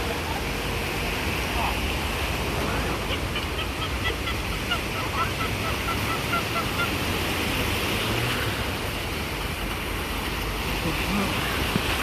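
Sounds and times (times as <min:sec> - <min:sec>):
ocean surf washing onto beach: 0:00.0 - 0:12.0.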